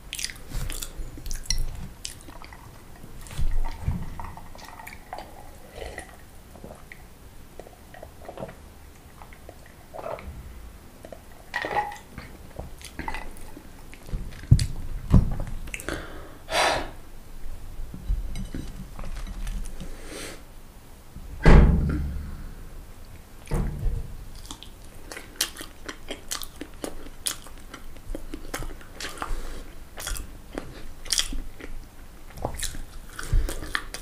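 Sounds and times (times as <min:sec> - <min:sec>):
low thumps: 0:21.2 - 0:24.3.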